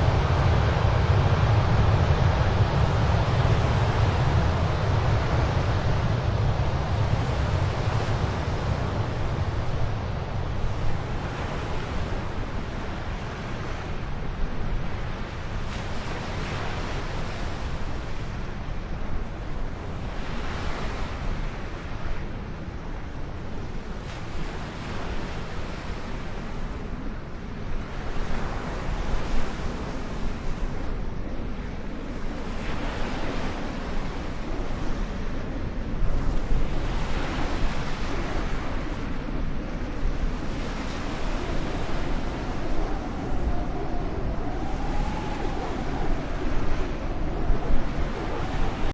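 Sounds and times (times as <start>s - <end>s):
steady low rumble: 0.0s - 11.0s
wind buffeting microphone: 0.0s - 48.9s.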